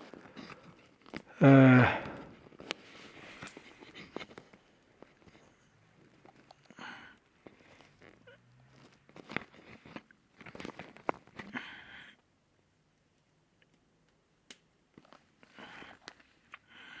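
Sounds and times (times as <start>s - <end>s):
wood stove fire crackling: 0.0s - 7.9s, 12.7s - 17.0s.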